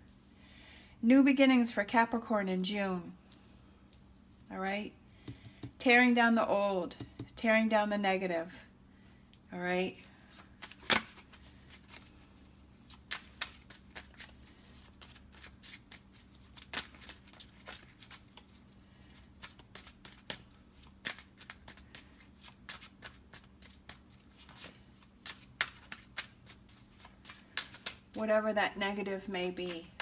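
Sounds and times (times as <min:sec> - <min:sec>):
faint steady hum: 0:00.0 - 0:30.0
cards being shuffled: 0:10.4 - 0:18.7, 0:19.4 - 0:28.3, 0:29.2 - 0:30.0.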